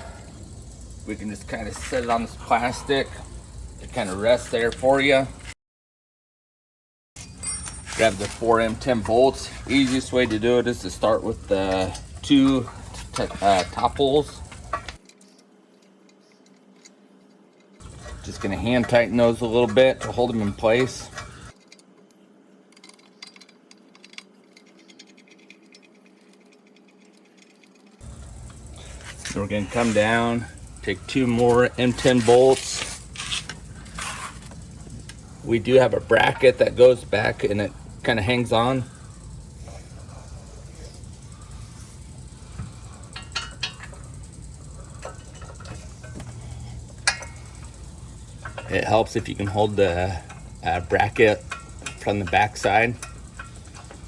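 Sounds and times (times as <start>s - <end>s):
low steady hum: 0.0s - 5.5s, 7.2s - 54.0s
metal clinks and knocks: 7.2s - 15.4s, 16.4s - 22.0s, 22.7s - 54.0s
metallic clicks of bolts threading: 7.2s - 15.4s, 17.6s - 21.9s, 22.7s - 54.0s.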